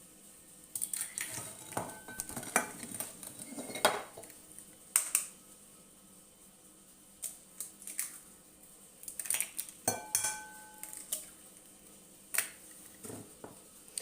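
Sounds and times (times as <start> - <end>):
utensil clinking against bowl: 9.9 - 11.2.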